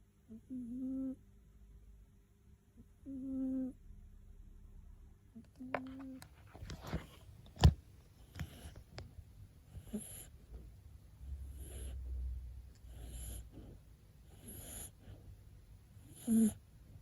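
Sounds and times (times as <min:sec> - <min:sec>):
kitten snoring: 0:00.3 - 0:01.2, 0:03.0 - 0:03.8, 0:09.7 - 0:10.4, 0:11.2 - 0:15.2, 0:16.0 - 0:16.7.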